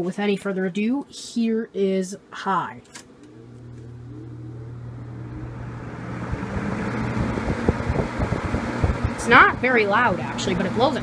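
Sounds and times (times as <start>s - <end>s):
box fan motor hum: 2.7s - 11.0s
airflow buffeting microphone: 3.3s - 11.0s
faint rising tone: 3.4s - 7.9s.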